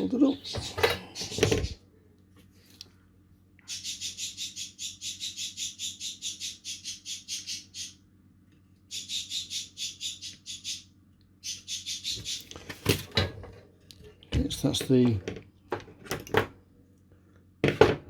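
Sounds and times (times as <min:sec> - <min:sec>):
bird chirping rapidly: 0:03.6 - 0:08.1, 0:08.9 - 0:12.5.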